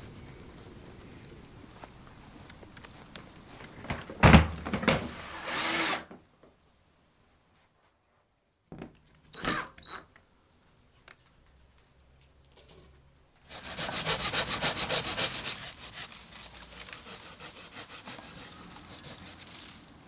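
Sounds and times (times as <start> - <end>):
hand tool rasping wood: 5.2 - 6.1, 13.4 - 19.8.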